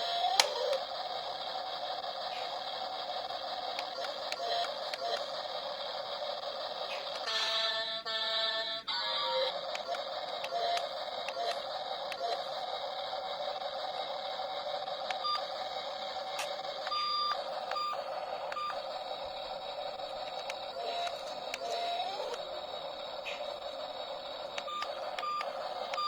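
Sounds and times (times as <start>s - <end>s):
toy motors and gears whirring: 0.0s - 26.0s
clicks: 20.2s - 22.5s.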